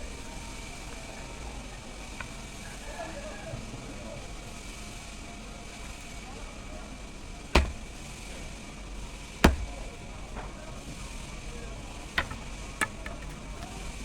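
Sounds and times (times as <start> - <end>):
axe chopping wood: 7.6 - 8.0, 9.4 - 10.0, 12.1 - 13.8.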